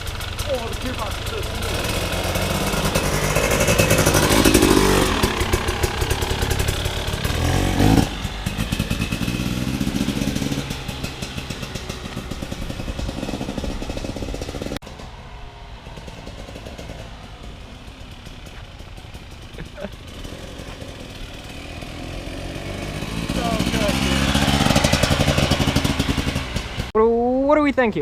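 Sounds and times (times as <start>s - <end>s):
dirt bike engine running: 0.0s - 26.9s.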